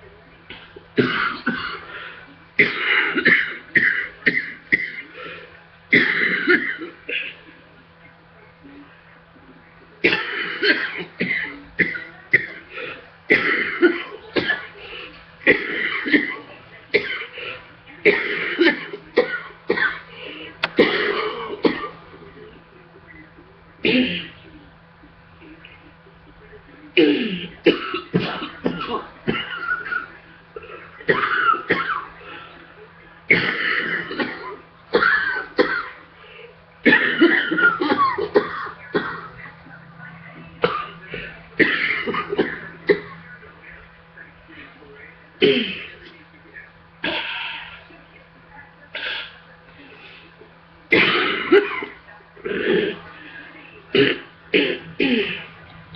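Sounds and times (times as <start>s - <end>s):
person coughing hard: 1.0s - 7.4s, 10.0s - 14.8s, 15.4s - 22.0s, 23.8s - 24.4s, 27.0s - 32.1s, 33.3s - 36.0s, 36.8s - 39.3s, 40.6s - 43.2s, 45.4s - 46.0s, 50.9s - 53.0s, 53.9s - 55.5s.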